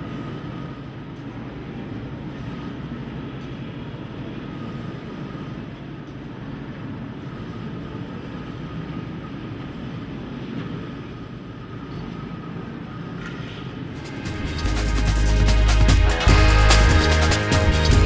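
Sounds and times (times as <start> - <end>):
laser cutting machine drone: 13.9 - 18.0.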